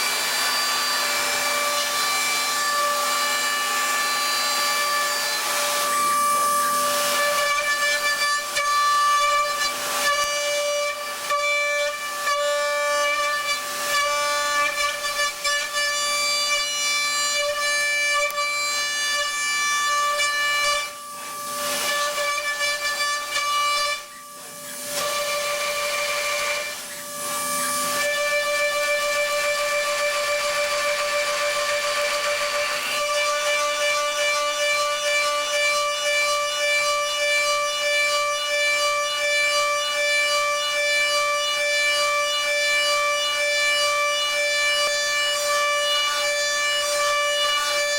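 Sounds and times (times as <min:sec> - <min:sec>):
milling machine whining: 0:00.0 - 0:38.4.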